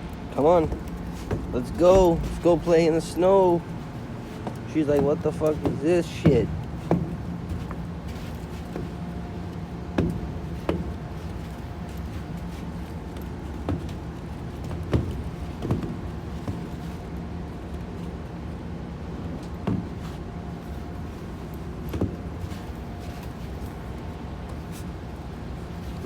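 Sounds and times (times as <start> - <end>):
low motor hum: 0.0 - 26.0
short knocks: 0.4 - 16.9.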